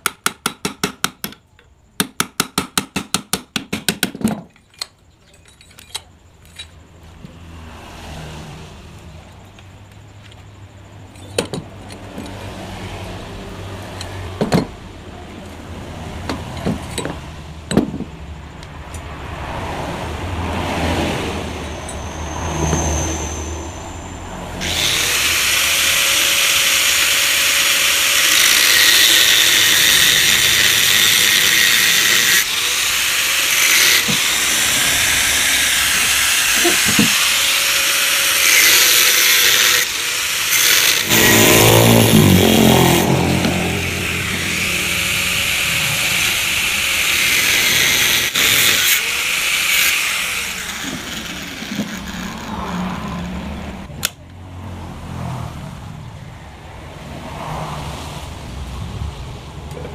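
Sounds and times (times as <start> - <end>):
metal knocks: 11.1 - 12.4, 14.0 - 14.9, 16.2 - 18.3
angle grinder cutting metal: 21.5 - 53.7.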